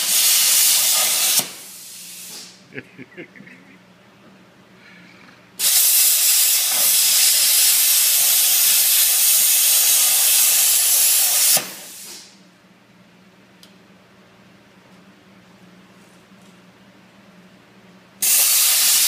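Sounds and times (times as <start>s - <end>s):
plasma cutter hissing: 0.0s - 2.6s, 5.6s - 12.3s, 18.2s - 19.0s.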